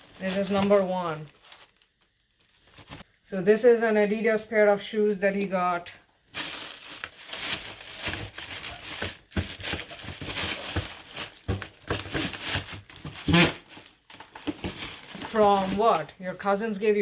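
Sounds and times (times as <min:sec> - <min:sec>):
packaging rustling and crinkling: 0:00.0 - 0:03.1, 0:06.3 - 0:16.1.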